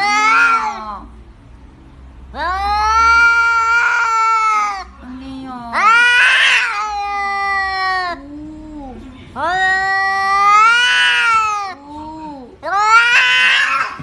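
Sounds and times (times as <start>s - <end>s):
cat yowling: 0.0s - 1.1s, 2.3s - 4.9s, 5.7s - 11.8s, 12.6s - 14.0s
cat low murmurs: 5.7s - 14.0s.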